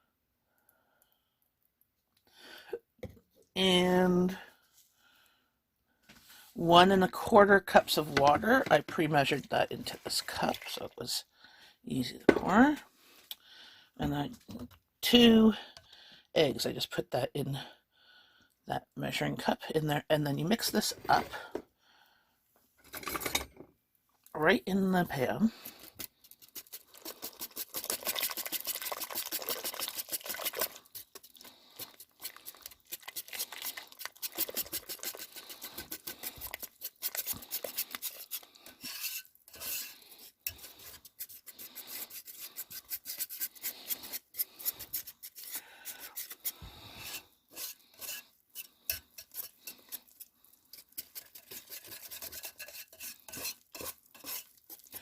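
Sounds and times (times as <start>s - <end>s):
utensil scraping ceramic pot: 25.1s - 55.0s.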